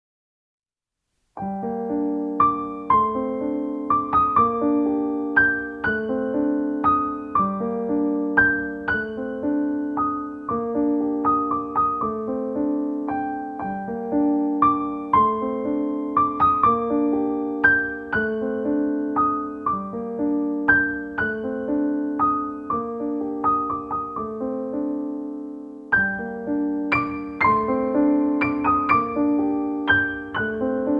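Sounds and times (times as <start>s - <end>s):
piano music: 1.4s - 30.9s.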